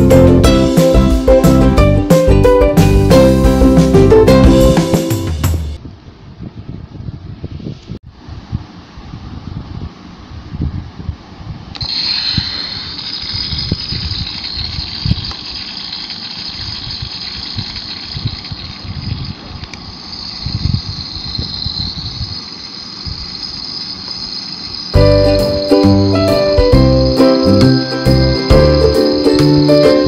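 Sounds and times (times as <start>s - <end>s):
small electric motor whine: 11.8s - 30.0s.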